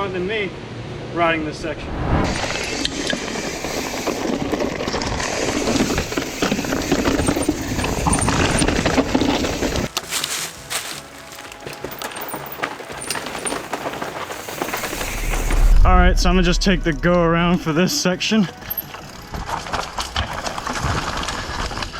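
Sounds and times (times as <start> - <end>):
bikes rattling: 2.4 - 15.8, 17.7 - 21.9
tyres scraping over rock: 2.9 - 15.8, 18.4 - 21.9
scattered clicks and rattles: 10.8 - 15.5.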